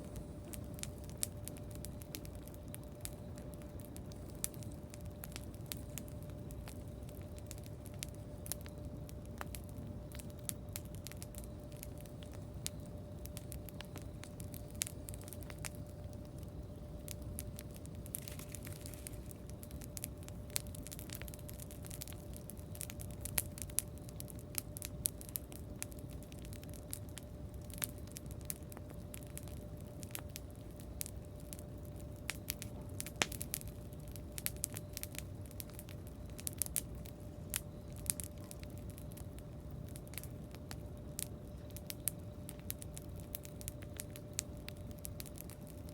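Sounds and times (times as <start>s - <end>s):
campfire crackling and popping: 0.0s - 45.9s
faint steady hum: 0.0s - 45.9s
low steady rush: 0.0s - 45.9s.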